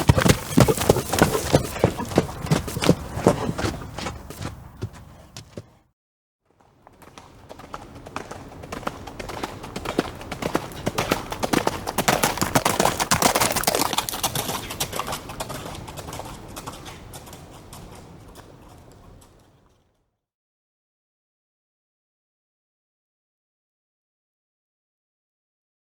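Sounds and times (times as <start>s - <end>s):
horses galloping hoofbeats: 0.0s - 5.9s, 6.6s - 19.8s.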